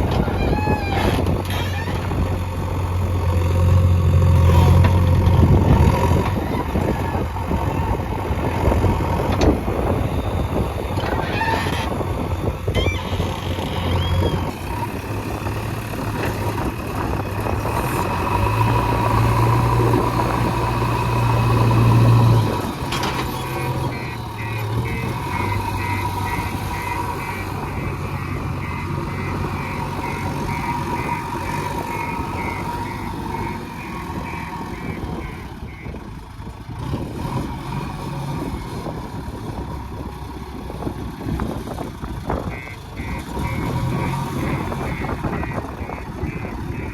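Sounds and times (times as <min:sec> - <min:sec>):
diesel engine revving: 0:00.0 - 0:46.9
high-pitched pulsing: 0:23.5 - 0:35.8.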